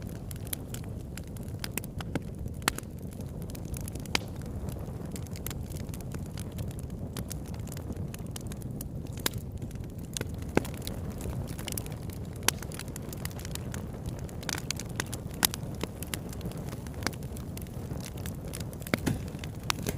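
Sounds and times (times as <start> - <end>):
burning wood crackling and popping: 0.0 - 19.9
low rumble of flames: 0.0 - 19.9.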